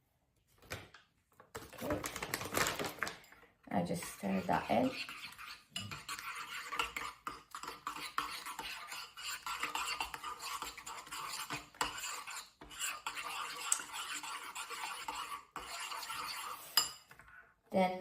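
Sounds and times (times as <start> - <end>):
spoon scraping and clinking bowl: 3.9 - 17.3.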